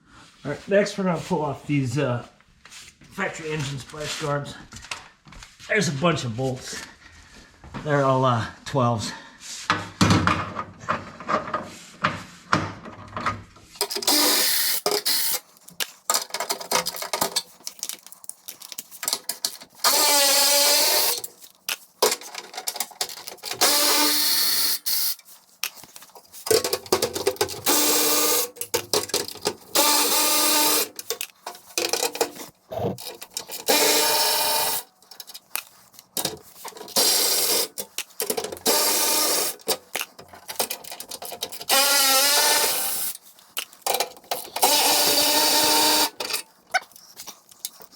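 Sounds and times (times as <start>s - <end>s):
clicks and handling noise: 12.8s - 20.0s, 21.1s - 23.8s, 25.0s - 27.8s, 28.4s - 29.9s, 30.9s - 33.8s, 34.9s - 37.0s, 37.6s - 38.8s, 39.5s - 41.8s, 43.0s - 44.9s
power tool bursts: 13.8s - 15.4s, 19.8s - 21.2s, 23.6s - 25.2s, 29.8s - 30.9s, 33.7s - 34.8s, 41.7s - 43.1s, 44.6s - 46.2s.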